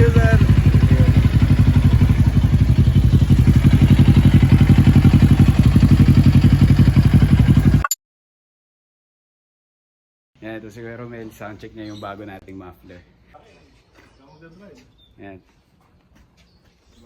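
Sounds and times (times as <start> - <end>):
motorcycle engine idling: 0.0 - 7.8.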